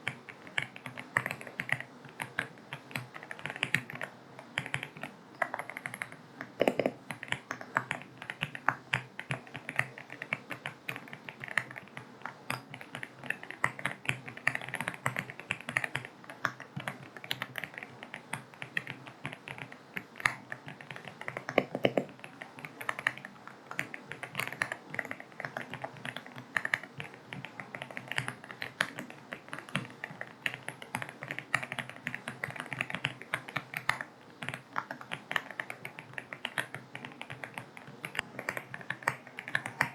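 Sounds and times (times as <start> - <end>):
mechanical keyboard typing: 0.0 - 39.9.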